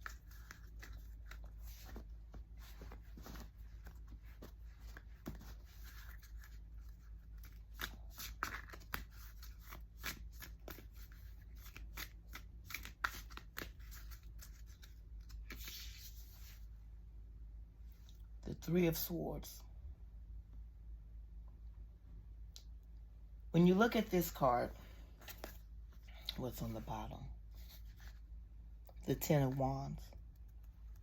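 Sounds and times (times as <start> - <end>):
cards being shuffled: 0.0 - 16.7, 25.2 - 26.9, 27.5 - 28.2.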